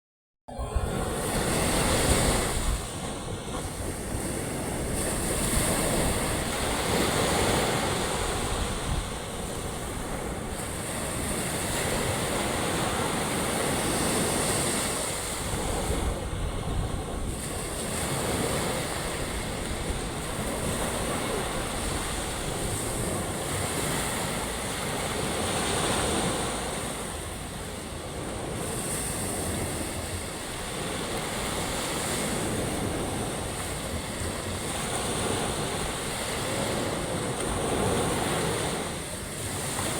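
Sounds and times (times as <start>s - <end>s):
ocean waves breaking on beach: 0.5s - 39.9s.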